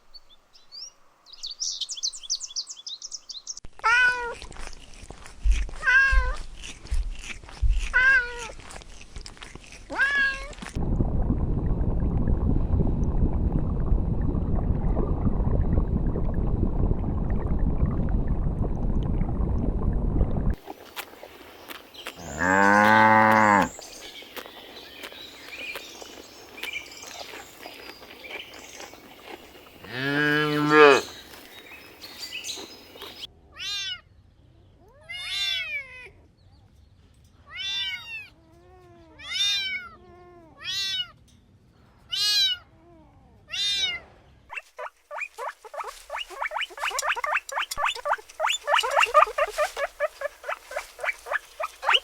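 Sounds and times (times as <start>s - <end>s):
cat meowing: 3.8s - 4.4s, 5.8s - 6.4s, 9.9s - 10.6s
steady low rumbling: 10.8s - 20.6s
cow mooing: 22.2s - 23.8s, 29.8s - 31.2s.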